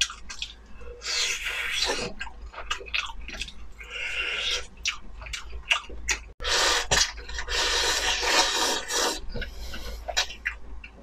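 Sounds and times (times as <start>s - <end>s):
wet chewing and smacking: 0.0s - 8.6s
noodles slurping: 6.4s - 10.4s.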